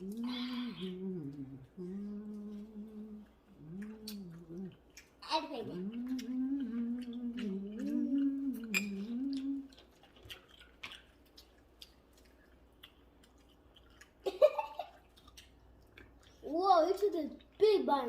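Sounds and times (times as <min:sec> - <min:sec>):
short vocal sound: 0:00.0 - 0:09.7
person humming: 0:00.0 - 0:09.8
small mouth clicks: 0:00.0 - 0:14.2
soft chewing: 0:00.0 - 0:18.0.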